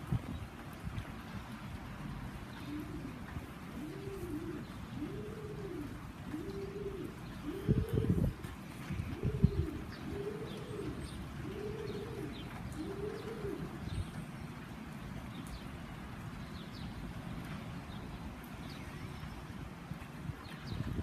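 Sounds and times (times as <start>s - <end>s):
dove cooing: 2.5s - 14.0s.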